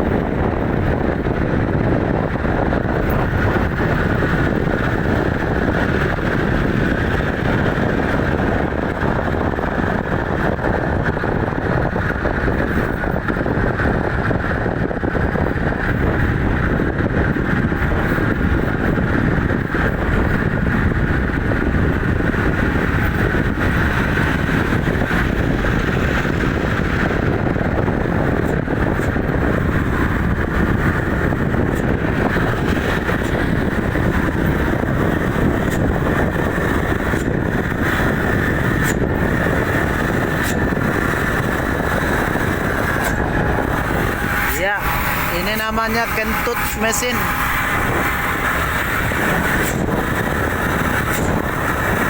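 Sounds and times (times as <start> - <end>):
engine running: 0.0 - 52.0.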